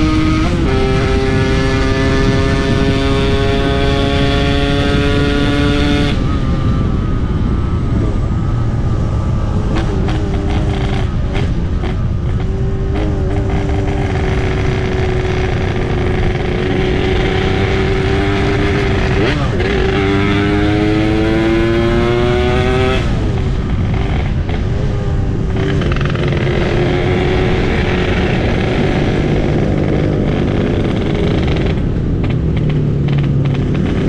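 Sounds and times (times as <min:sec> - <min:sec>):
motorcycle engine running: 0:00.0 - 0:34.0
wind noise: 0:00.0 - 0:34.0.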